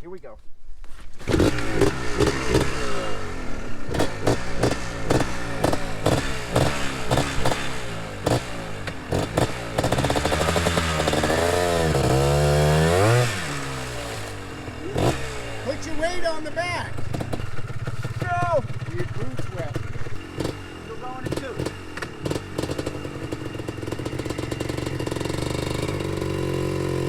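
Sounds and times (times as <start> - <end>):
two-stroke engine revving: 1.2 - 27.0
engine knocking and clatter: 16.6 - 27.0.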